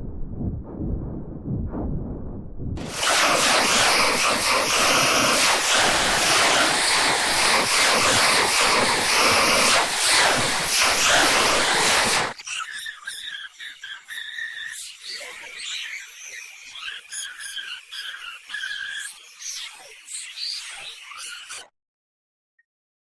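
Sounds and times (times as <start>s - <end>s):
loud rushing hiss: 2.8s - 12.4s.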